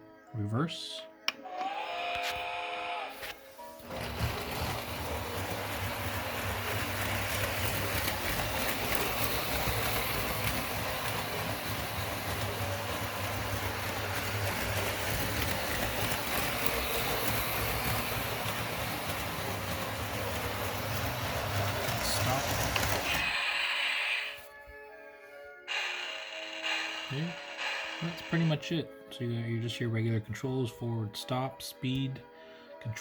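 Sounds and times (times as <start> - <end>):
toy train motor humming: 1.5 - 24.5, 25.7 - 28.6
toy train wheels rattling: 3.8 - 24.4, 25.7 - 28.6.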